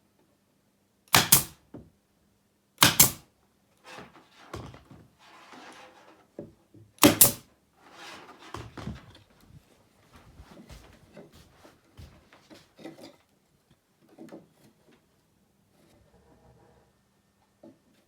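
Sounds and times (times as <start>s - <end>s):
nails driven into wood: 1.1s - 1.6s, 2.8s - 3.3s, 7.0s - 7.4s
boards scraping and knocking: 3.8s - 9.6s.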